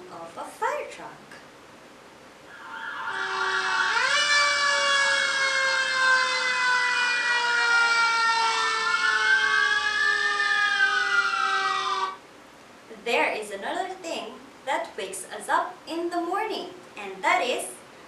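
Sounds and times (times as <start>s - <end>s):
fire truck siren wailing: 2.5s - 12.2s.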